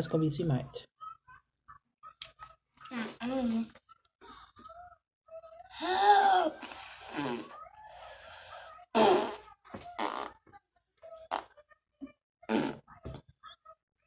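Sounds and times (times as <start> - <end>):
child blowing raspberries: 6.4 - 7.6, 8.3 - 10.3.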